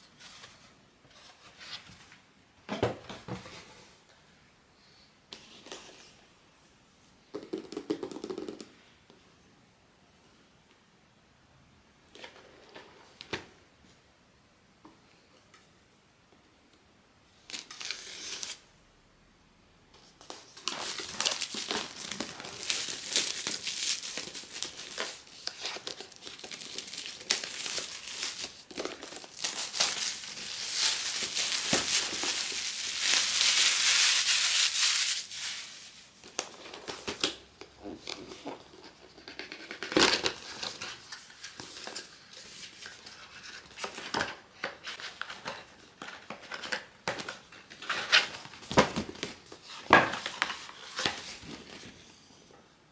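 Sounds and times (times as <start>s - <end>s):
packaging crinkling and tearing: 20.2s - 37.4s.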